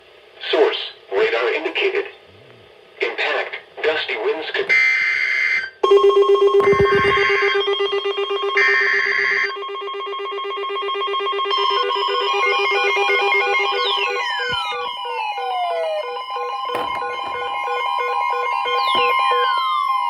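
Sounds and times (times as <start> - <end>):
pulsing ring-like alarm tone: 5.8 - 20.0
stepping beeps: 6.4 - 9.5, 10.1 - 20.0
falling pitch sweep: 13.8 - 20.0.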